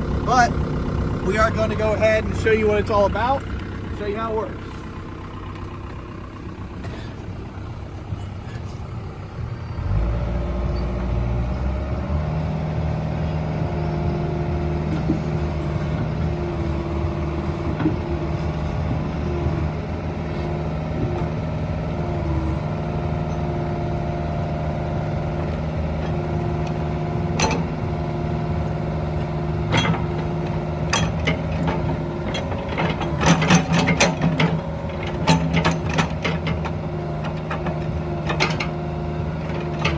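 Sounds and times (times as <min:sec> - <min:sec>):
excavator diesel engine running: 0:00.0 - 0:39.9
sharp metallic clanks and knocks: 0:14.8 - 0:19.8, 0:26.0 - 0:27.8, 0:29.6 - 0:38.8, 0:39.4 - 0:39.9.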